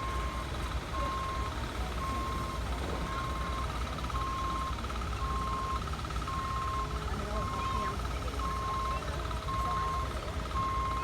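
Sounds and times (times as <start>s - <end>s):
reversing alarm beeping: 0.0s - 2.6s, 8.4s - 11.0s.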